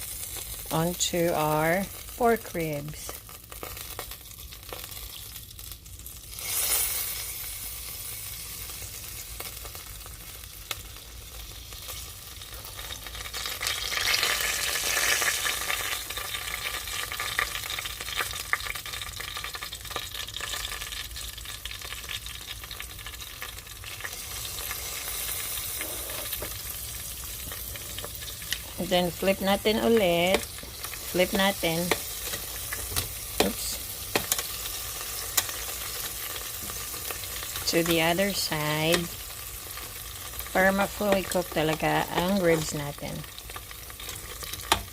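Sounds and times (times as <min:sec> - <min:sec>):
ribs sizzling and crackling: 0:00.0 - 0:44.9.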